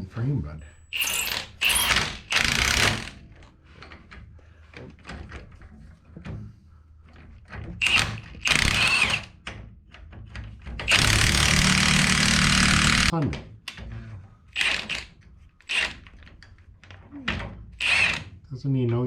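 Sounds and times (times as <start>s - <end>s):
power tool bursts: 1.0s - 3.2s, 7.8s - 9.3s, 10.9s - 13.1s, 14.6s - 15.1s, 17.8s - 18.3s
small metal clicks and knocks: 9.3s - 10.9s, 15.0s - 17.6s.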